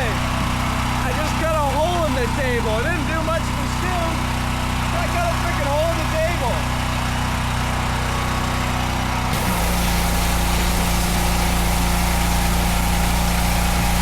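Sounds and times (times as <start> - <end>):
pressure washer engine running: 0.0 - 14.0
high-pressure spray hiss: 9.4 - 14.0.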